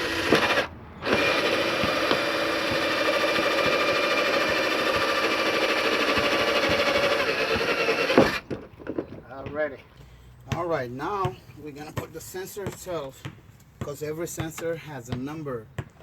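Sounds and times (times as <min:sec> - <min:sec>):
power drill boring through plastic: 0:00.0 - 0:08.6.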